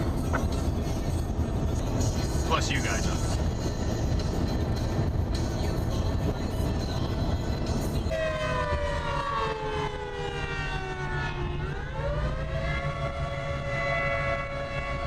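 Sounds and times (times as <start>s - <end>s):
steady low rumble: 0.0s - 8.1s
warning siren wailing: 7.9s - 15.0s.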